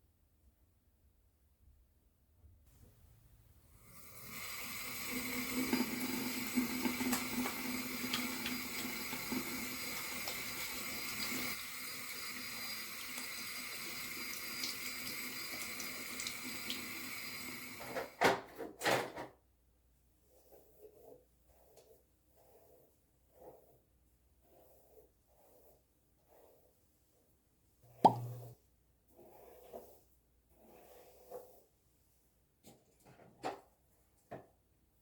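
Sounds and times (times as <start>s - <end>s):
tap running into sink: 5.4s - 11.6s, 28.0s - 28.5s.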